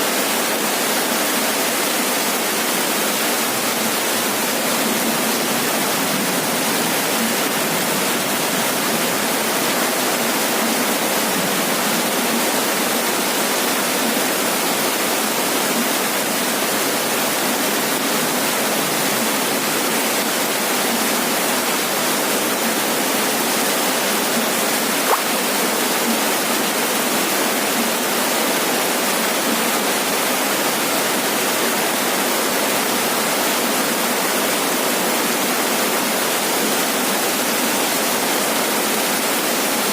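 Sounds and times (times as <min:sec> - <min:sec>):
heavy rain on roof: 0:00.0 - 0:39.9.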